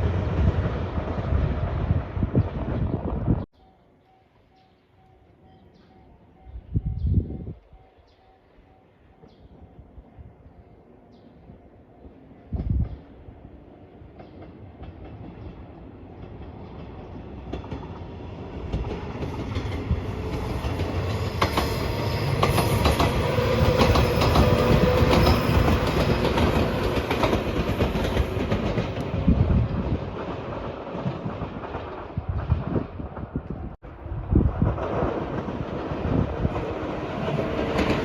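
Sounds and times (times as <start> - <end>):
train passing: 0.0 - 3.4, 4.0 - 38.0
wheels clicking over rail joints: 22.4 - 32.1.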